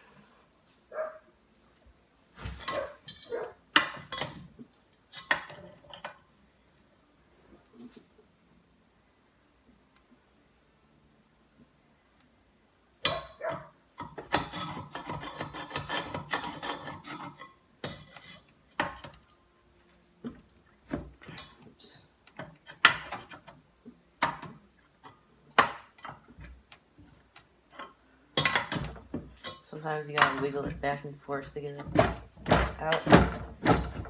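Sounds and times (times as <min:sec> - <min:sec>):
metal parts scraping and rattling: 0:27.7 - 0:34.0.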